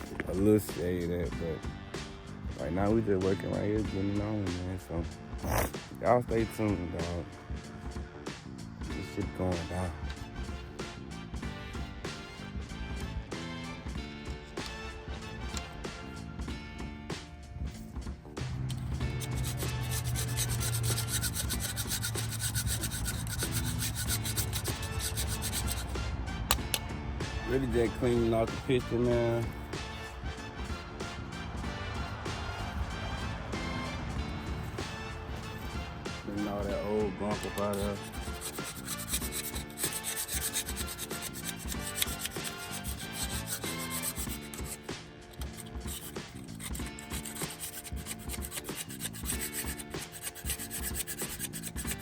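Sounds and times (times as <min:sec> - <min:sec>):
background music: 0:00.0 - 0:52.0
scrubbing strokes on metal: 0:18.6 - 0:26.1, 0:34.7 - 0:52.0.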